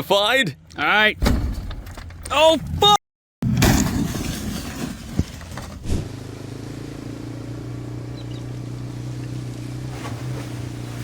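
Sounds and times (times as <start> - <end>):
vehicle engine idling: 6.1 - 11.0.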